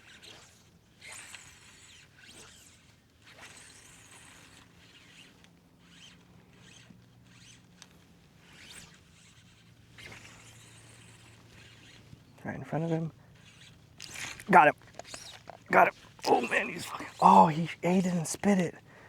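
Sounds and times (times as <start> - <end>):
fly line rasping through guides: 14.0 - 17.9.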